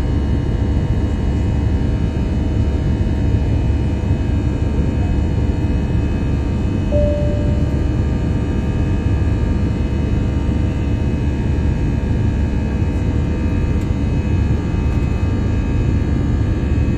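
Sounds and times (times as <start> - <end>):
short clear tone: 6.9 - 8.3.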